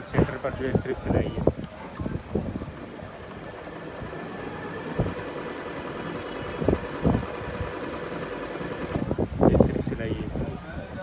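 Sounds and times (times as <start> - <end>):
sewing machine motor hum: 2.1 - 9.2.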